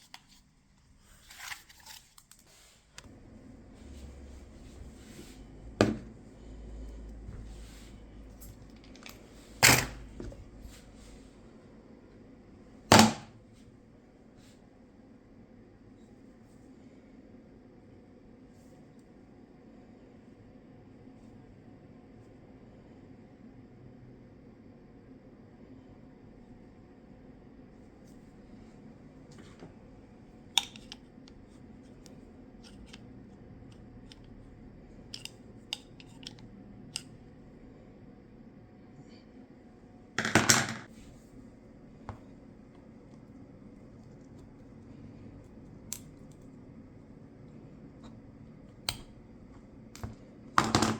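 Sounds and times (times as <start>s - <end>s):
steady low hum: 3.0s - 50.9s
tools and parts clicking: 30.6s - 31.0s, 35.1s - 36.4s.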